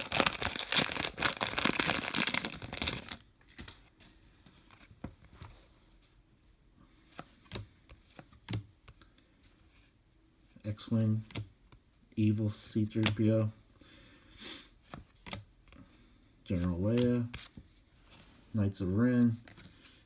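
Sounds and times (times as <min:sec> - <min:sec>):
card pack wrapper tearing and crinkling: 0:00.0 - 0:03.2.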